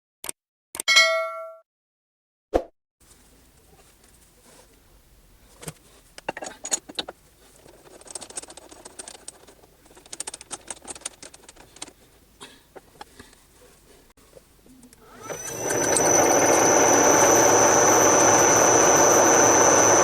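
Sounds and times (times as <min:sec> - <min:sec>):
small metal parts rattling: 0:06.3 - 0:11.9.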